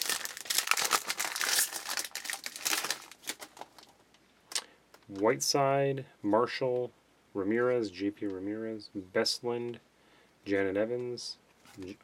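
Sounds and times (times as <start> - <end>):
foil wrapper crinkling and tearing: 0.0 - 3.9.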